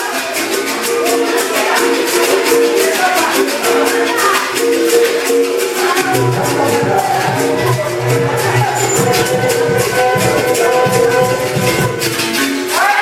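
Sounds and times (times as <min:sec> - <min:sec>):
low deep note: 0:06.0 - 0:12.4
twangy berimbau notes: 0:06.0 - 0:12.5.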